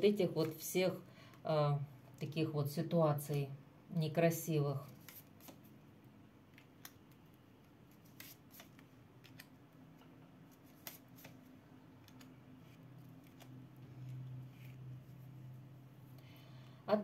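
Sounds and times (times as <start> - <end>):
tarot cards clicking: 12.0 - 14.8.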